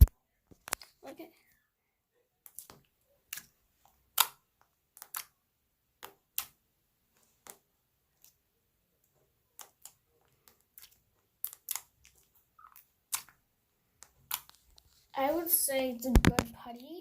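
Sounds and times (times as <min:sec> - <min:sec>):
slime clicking and popping: 0:04.1 - 0:05.4, 0:06.0 - 0:06.6, 0:09.6 - 0:13.4, 0:14.0 - 0:14.6.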